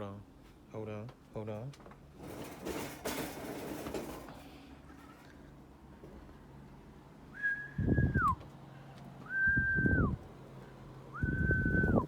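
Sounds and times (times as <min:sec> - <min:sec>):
person whistling flat notes: 0:09.3 - 0:10.2.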